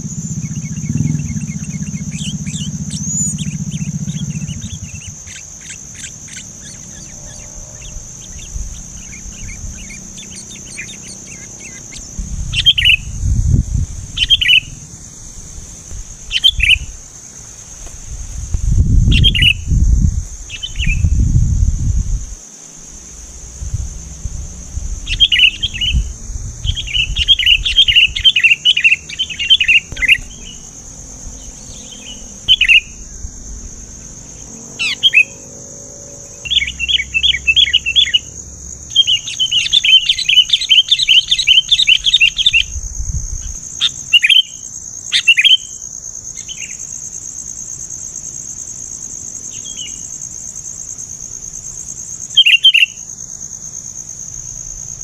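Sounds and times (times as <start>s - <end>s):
bulbul chattering calls: 0.0s - 13.2s, 14.1s - 15.2s, 15.9s - 17.0s, 25.0s - 42.8s, 43.4s - 45.8s
high insect drone: 0.0s - 55.0s.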